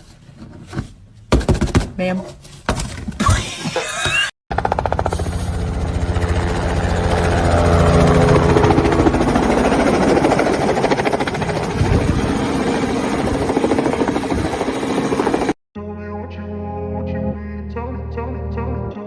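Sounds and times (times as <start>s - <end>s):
loud engine running: 4.5s - 15.6s.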